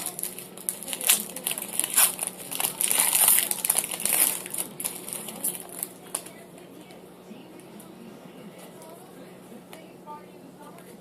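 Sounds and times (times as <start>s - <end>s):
foil wrapper crinkling: 0.0s - 6.6s.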